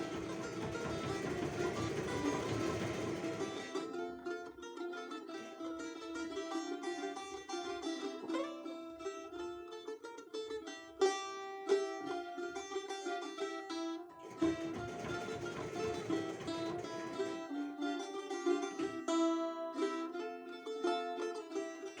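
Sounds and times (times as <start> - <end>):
balalaika strumming: 0.0 - 22.0.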